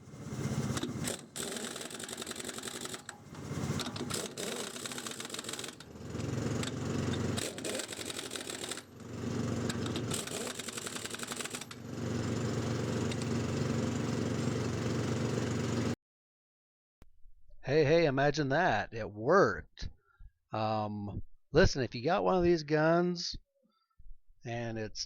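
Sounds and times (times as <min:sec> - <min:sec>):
air impact wrench rattling: 0:00.5 - 0:14.5.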